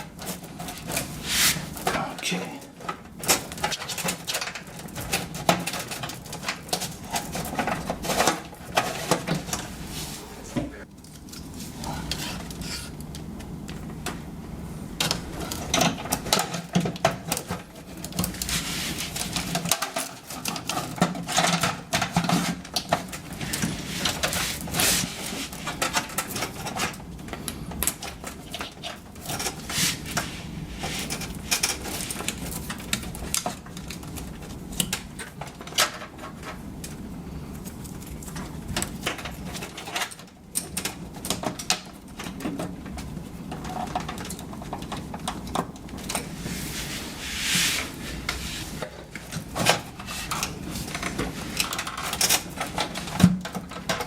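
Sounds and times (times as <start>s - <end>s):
steady low hum: 6.9s - 16.4s.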